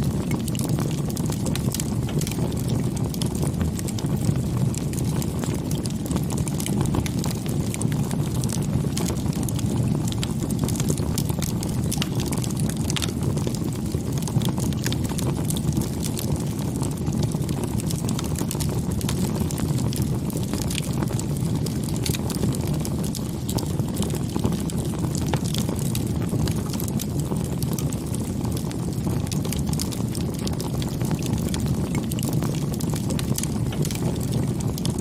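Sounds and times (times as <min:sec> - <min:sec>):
burning wood crackling and popping: 0:00.0 - 0:35.0
low rumble of flames: 0:00.0 - 0:35.0.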